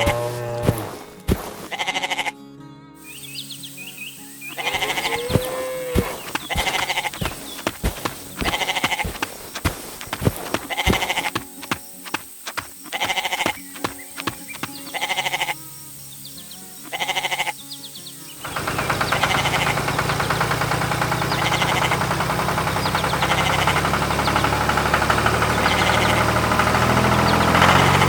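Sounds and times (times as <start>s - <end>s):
sheep bleating: 0.0s - 1.0s, 1.6s - 2.4s, 4.5s - 9.4s, 10.6s - 11.5s, 12.9s - 13.8s, 14.7s - 15.7s, 16.8s - 17.7s, 18.6s - 20.0s, 21.2s - 22.2s, 23.2s - 24.0s, 25.7s - 26.5s
sharp clicking taps: 4.7s - 15.1s, 18.4s - 28.0s.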